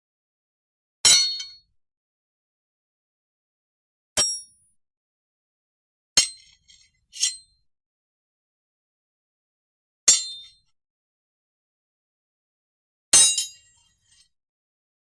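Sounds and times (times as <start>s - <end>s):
sword blades clashing: 6.2s - 7.4s, 13.2s - 14.2s.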